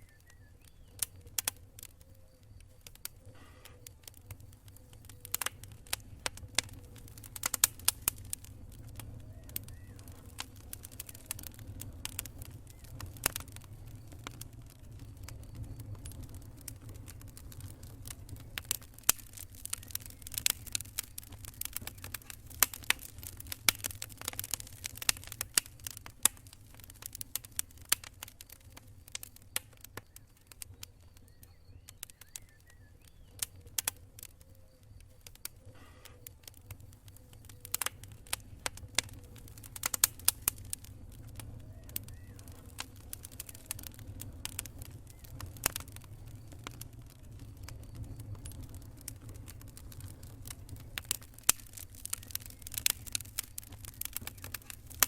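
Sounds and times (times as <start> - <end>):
fire low rumble: 0.0 - 55.0
fire snapping and popping: 0.0 - 55.0.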